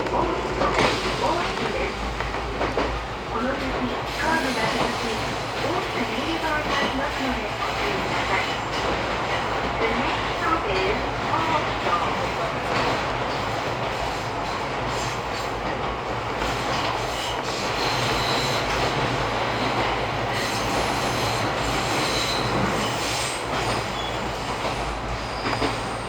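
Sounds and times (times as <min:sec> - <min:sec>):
train wheels rumbling on rail: 0:00.0 - 0:26.0.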